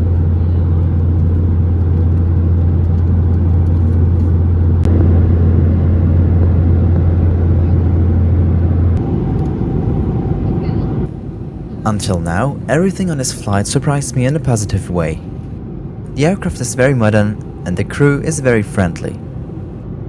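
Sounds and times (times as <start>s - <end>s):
aircraft cabin engine rumble: 0.0s - 20.0s
strong low hum: 0.0s - 20.0s.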